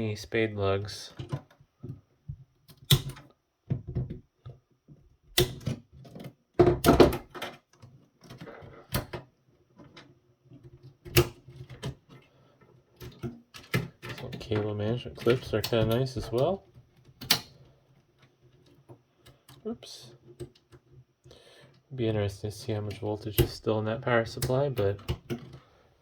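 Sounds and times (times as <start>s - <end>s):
clicks and knocks of parts: 5.3s - 21.1s, 24.4s - 25.7s.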